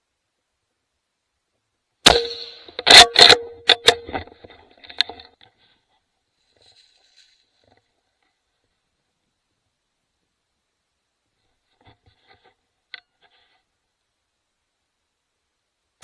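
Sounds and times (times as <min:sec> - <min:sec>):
rifle shots: 0:02.0 - 0:03.9.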